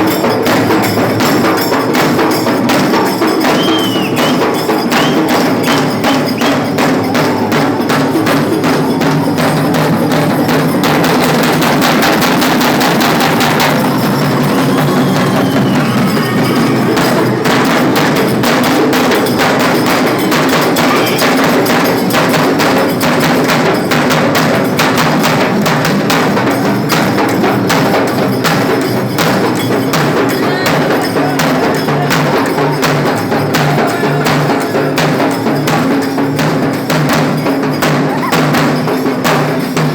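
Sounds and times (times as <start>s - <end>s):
fast drum percussion music: 0.0s - 39.9s.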